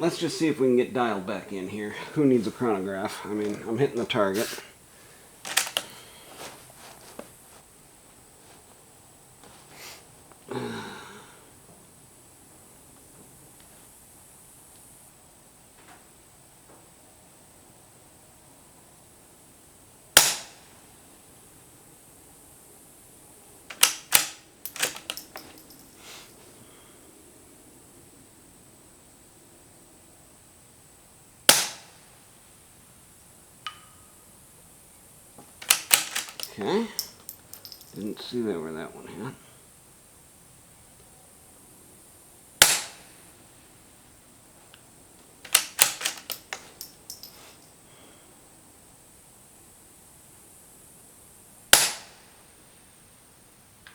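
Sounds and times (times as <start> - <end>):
rifle bolt metallic clicks: 5.5 - 6.0, 23.7 - 25.9, 35.6 - 38.0, 42.6 - 43.1, 45.4 - 47.6
suppressed rifle shot: 5.5 - 6.1, 20.2 - 20.7, 23.7 - 25.7, 31.5 - 32.1, 35.6 - 36.6, 42.6 - 43.3, 45.5 - 47.3, 51.7 - 52.3.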